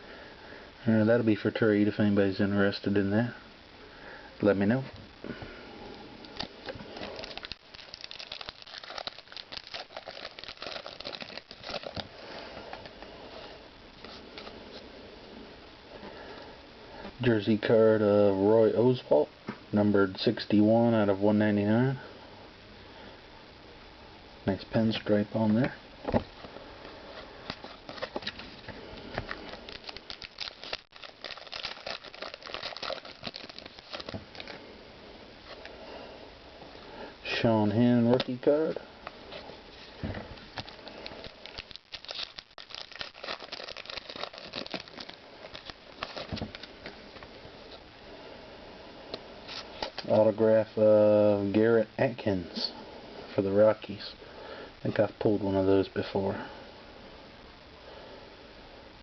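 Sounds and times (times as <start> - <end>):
wrapper and cards crinkling: 6.3 - 13.1, 27.4 - 34.6, 39.7 - 47.8, 49.4 - 50.2.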